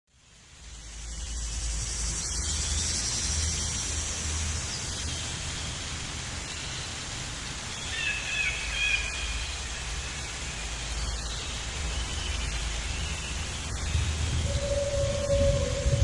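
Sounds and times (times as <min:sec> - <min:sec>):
steady hiss: 0:00.1 - 0:16.0
low rumble: 0:13.6 - 0:16.0.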